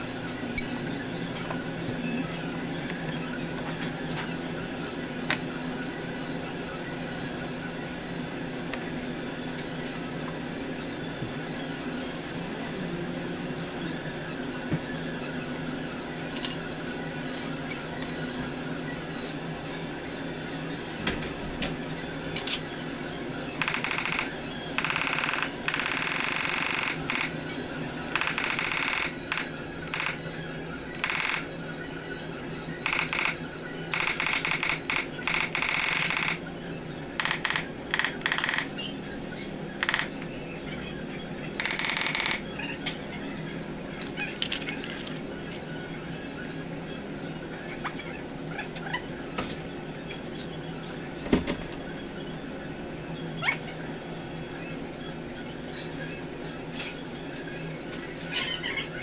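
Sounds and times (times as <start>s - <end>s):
steady low hum: 0.0s - 59.0s.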